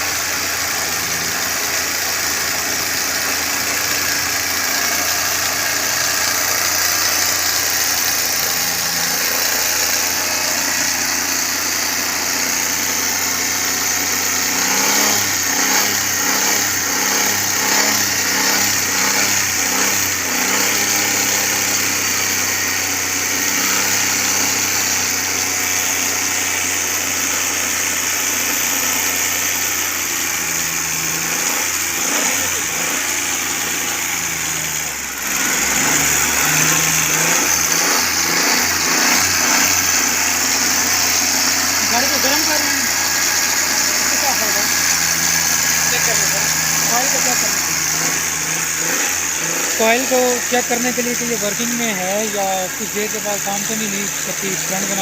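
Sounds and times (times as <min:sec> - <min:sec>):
car engine idling: 0:00.0 - 0:55.0.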